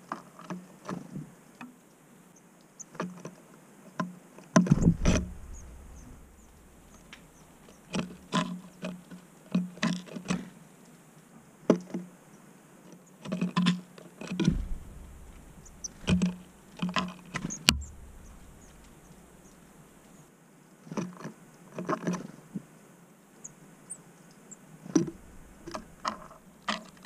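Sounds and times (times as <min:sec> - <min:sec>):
heavier knock: 0:04.7 - 0:07.6, 0:14.4 - 0:16.6, 0:17.6 - 0:19.4.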